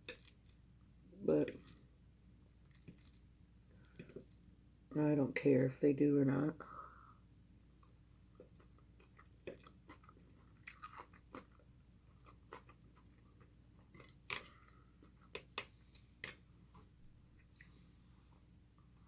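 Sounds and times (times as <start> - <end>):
person chewing: 0.0 - 0.6, 2.7 - 3.2, 3.8 - 4.4, 7.8 - 15.6.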